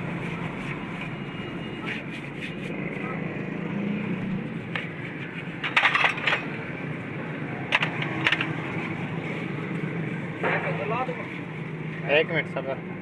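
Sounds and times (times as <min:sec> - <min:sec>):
metal tools clinking and rattling: 0:05.6 - 0:06.5.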